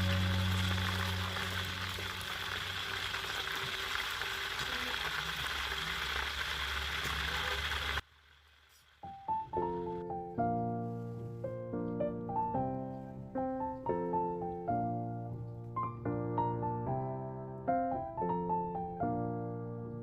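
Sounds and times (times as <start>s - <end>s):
piano music: 0.0s - 3.8s, 9.0s - 20.0s
food sizzling in a pan: 0.0s - 9.2s.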